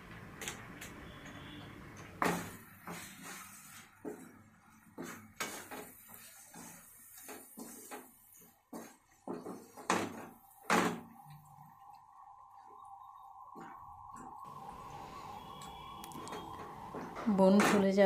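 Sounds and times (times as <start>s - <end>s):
steady whistle tone: 11.2s - 17.4s.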